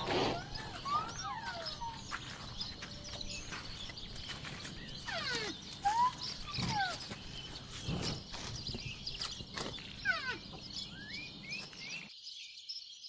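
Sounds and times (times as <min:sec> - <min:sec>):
animal whistled calls: 0:00.0 - 0:03.4, 0:05.0 - 0:07.2.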